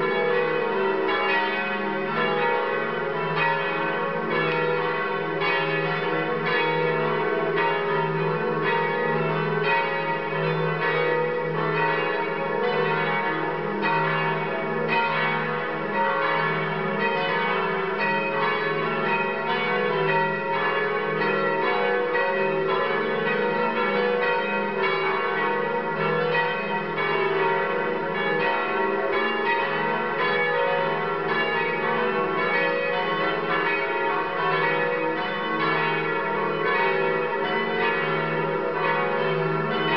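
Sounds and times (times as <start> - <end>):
church bells pealing: 0.0 - 39.9
low hum of bells: 0.0 - 39.9.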